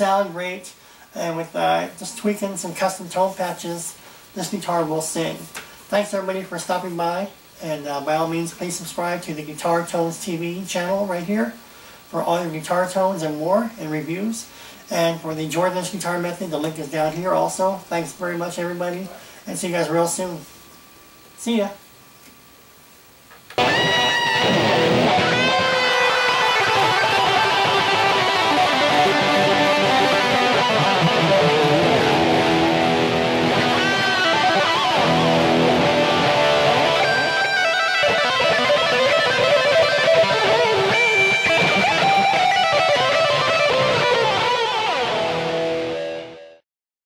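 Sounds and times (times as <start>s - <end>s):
electric guitar lead melody: 23.6s - 46.6s.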